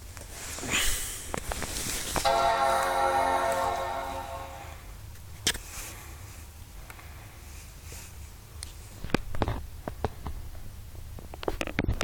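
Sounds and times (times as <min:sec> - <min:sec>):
computer startup chime: 0:02.3 - 0:04.9.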